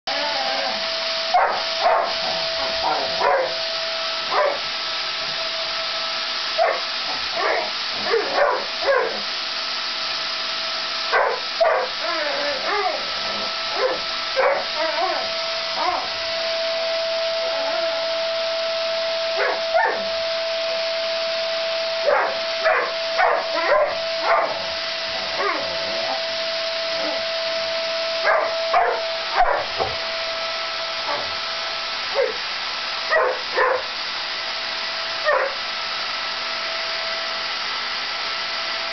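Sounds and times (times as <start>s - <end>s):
dog barking and whimpering: 0.1s - 3.6s, 4.3s - 4.6s, 6.6s - 9.3s, 11.1s - 16.1s, 19.4s - 20.1s, 22.0s - 26.2s, 28.2s - 29.8s, 31.1s - 31.3s, 32.2s - 32.4s, 33.1s - 33.9s, 35.2s - 35.6s
vacuum cleaner running: 0.1s - 38.9s.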